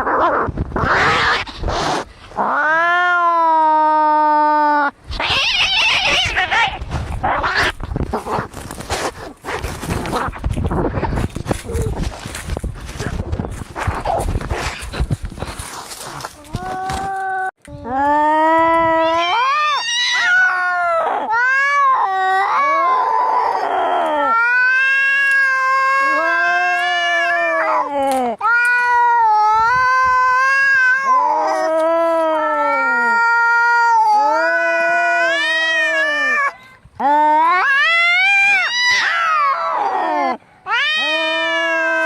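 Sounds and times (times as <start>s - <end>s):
cats yowling in a fight: 2.4s - 7.8s, 18.7s - 42.0s.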